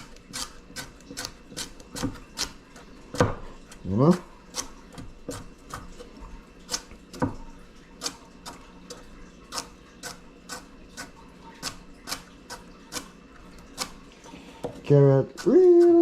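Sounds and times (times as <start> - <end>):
knife chopping on cutting board: 0.0 - 6.1.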